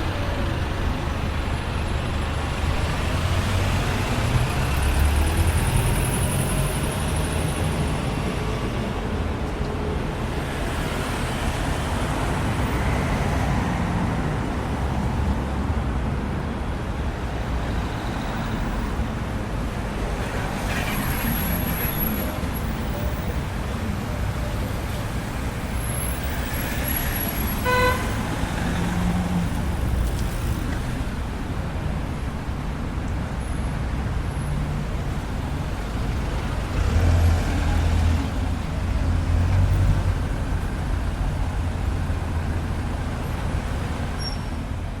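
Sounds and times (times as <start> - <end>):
passing cars road noise: 0.0 - 45.0
car horn toot: 27.6 - 28.2.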